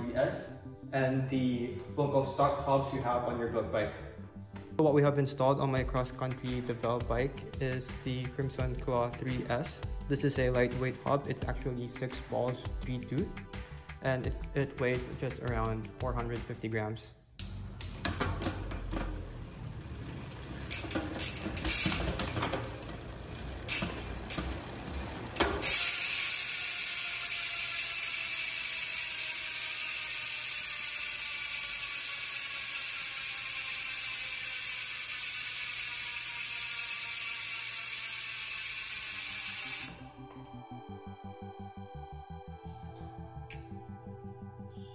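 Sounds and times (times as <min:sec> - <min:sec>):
bicycle hub ratcheting: 0:17.7 - 0:40.0.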